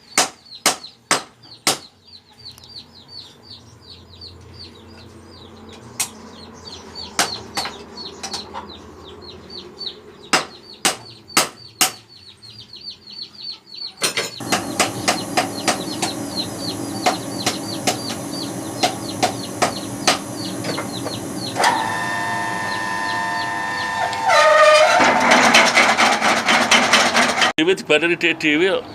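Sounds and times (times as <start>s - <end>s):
machine running with regular knocks: 14.3s - 27.5s
whining tone: 14.4s - 27.5s.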